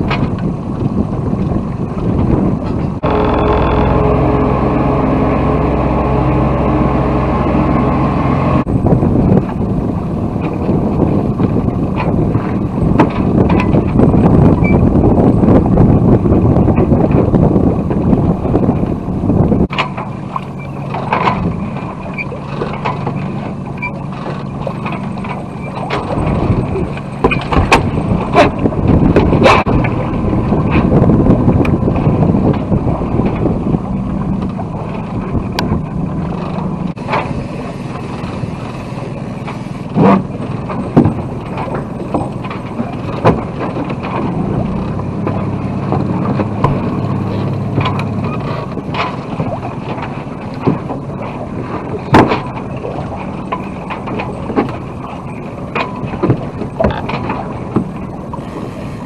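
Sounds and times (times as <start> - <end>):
water rushing along hull: 0.0 - 59.0
wind buffeting microphone: 0.0 - 59.0
steady low hum: 2.5 - 11.4.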